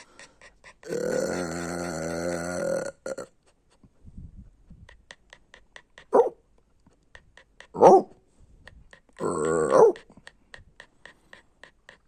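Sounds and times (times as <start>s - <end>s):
dog panting: 0.0s - 2.8s, 4.7s - 12.0s
dog barks: 6.1s - 6.4s, 7.8s - 8.2s, 9.4s - 10.0s.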